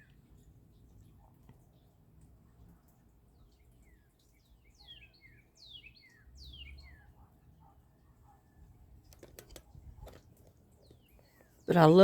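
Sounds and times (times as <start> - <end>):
birds singing faintly: 0.0 - 12.0
sharp clicks: 9.1 - 11.0.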